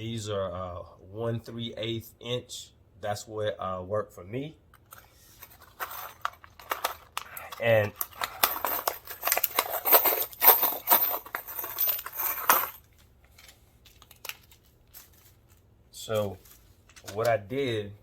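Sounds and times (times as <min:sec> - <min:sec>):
hardware and packaging rustles and clicks: 0:04.7 - 0:17.8.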